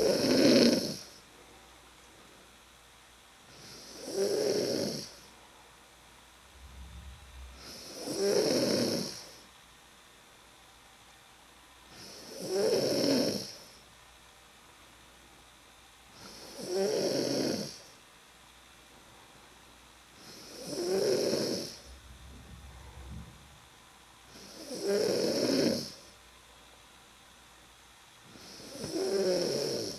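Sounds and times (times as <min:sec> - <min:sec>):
person snoring loudly: 0:00.0 - 0:01.2, 0:03.5 - 0:05.2, 0:06.6 - 0:09.4, 0:12.0 - 0:13.7, 0:16.2 - 0:17.9, 0:20.2 - 0:23.3, 0:24.3 - 0:26.0, 0:28.4 - 0:29.9
soft breath: 0:21.7 - 0:23.6.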